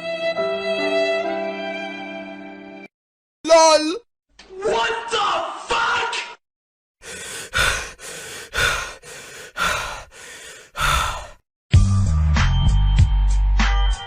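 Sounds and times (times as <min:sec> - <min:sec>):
heavy rasping breaths: 0:07.0 - 0:11.4.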